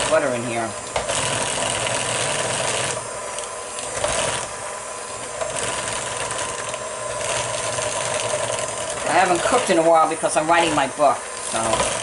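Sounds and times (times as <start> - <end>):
electric hand mixer running: 0.0 - 12.0
beaters scraping batter in bowl: 3.8 - 12.0.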